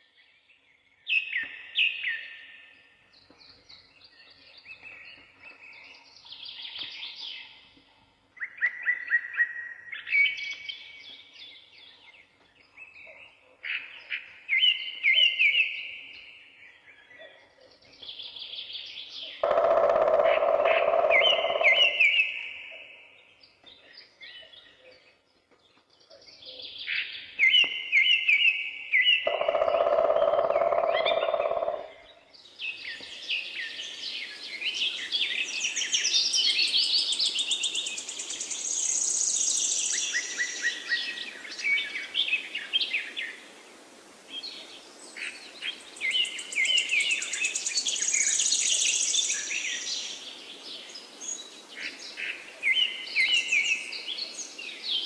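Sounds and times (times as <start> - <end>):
birds singing and chirping: 0.0 - 43.6, 44.3 - 55.0
rapid high-pitched birdsong: 17.7 - 43.1, 45.7 - 50.6
faint steady hiss: 32.3 - 55.0.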